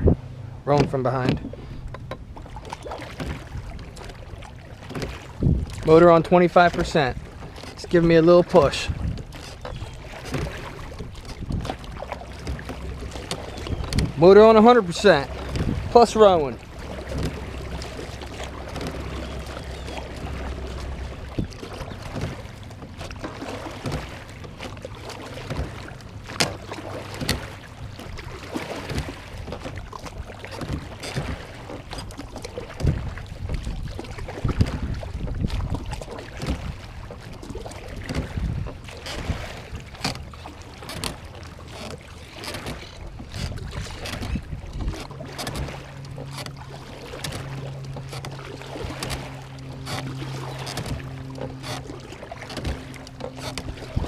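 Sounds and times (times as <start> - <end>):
steady low hum: 0.0 - 31.5, 44.4 - 54.0
oar splashes: 0.0 - 54.0
oars knocking in oarlocks: 0.7 - 54.0
electric trolling motor: 7.0 - 33.0, 39.9 - 54.0.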